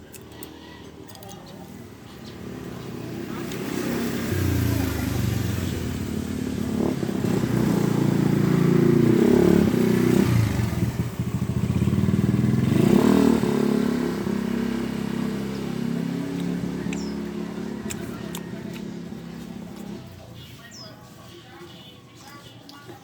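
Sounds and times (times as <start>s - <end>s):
small engine running: 2.4s - 20.2s.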